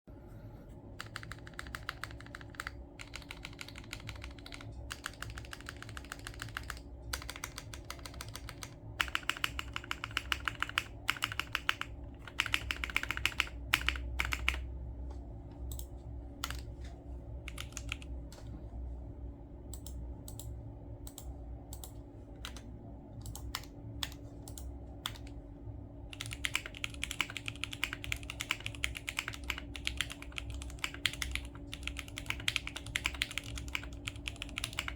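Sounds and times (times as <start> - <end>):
typing on mechanical keyboard: 1.0 - 14.6, 15.7 - 16.7, 17.5 - 18.1, 23.2 - 25.4, 26.1 - 34.9.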